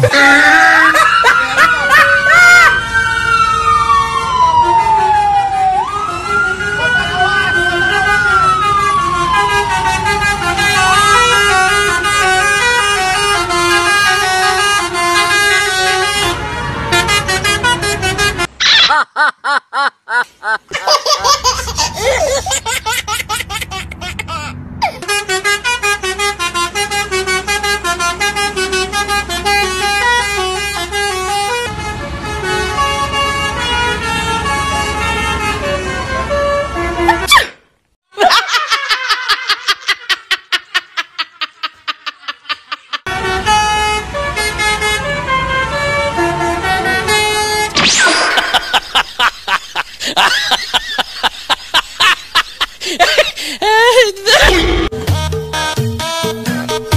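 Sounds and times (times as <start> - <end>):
siren wail: 0.0 - 11.6, 47.7 - 49.0
multi-tone bus horn melody: 0.0 - 18.6, 23.8 - 37.3, 43.0 - 49.0, 54.3 - 56.9.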